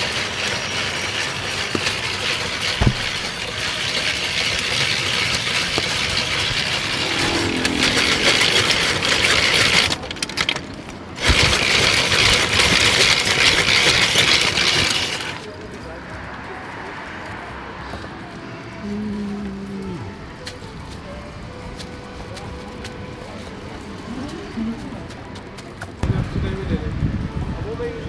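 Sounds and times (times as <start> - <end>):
ice shaver grating: 0.0 - 15.7.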